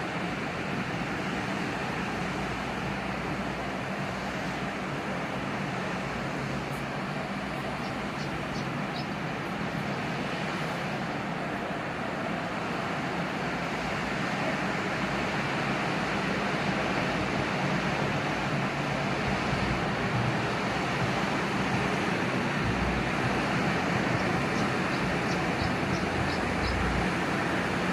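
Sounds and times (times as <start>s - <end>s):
sea surf rushing: 0.0s - 27.9s.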